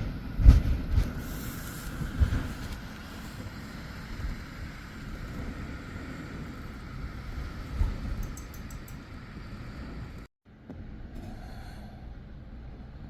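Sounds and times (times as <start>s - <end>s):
wind buffeting microphone: 0.0s - 10.3s.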